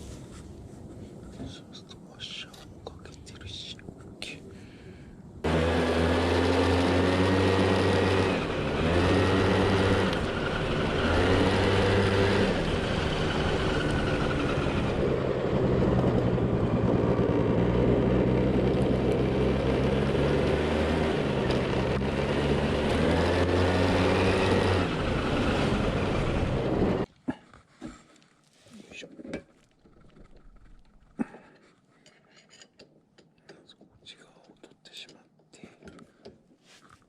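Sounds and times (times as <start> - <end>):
scooter engine running: 5.5 - 27.1.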